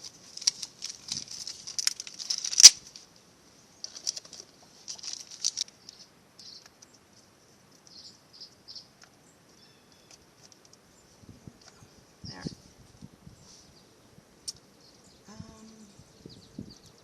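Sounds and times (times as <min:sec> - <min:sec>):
packaging crinkling and crackling: 0:00.0 - 0:03.0, 0:03.9 - 0:05.7.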